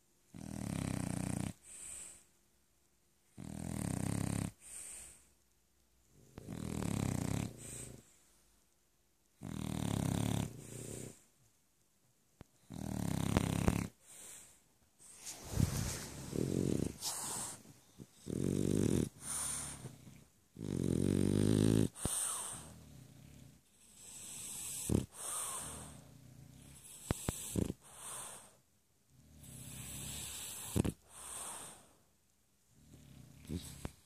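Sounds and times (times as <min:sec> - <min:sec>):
dog snoring: 0:00.3 - 0:02.2, 0:03.3 - 0:05.2, 0:06.2 - 0:08.1, 0:09.4 - 0:11.3, 0:12.6 - 0:32.0, 0:32.7 - 0:34.0
dog sharp breaths: 0:14.2 - 0:18.1.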